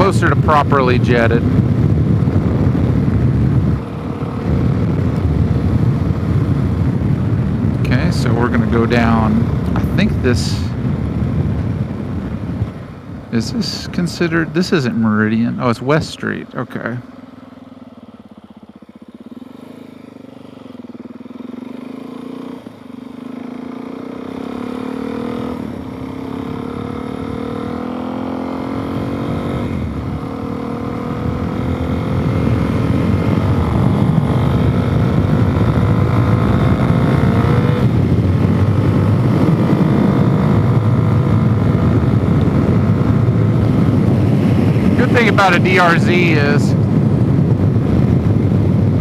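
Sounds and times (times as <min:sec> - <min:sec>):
wind noise on microphone: 0:00.0 - 0:14.7, 0:25.2 - 0:49.0
motorcycle engine accelerating: 0:00.0 - 0:49.0.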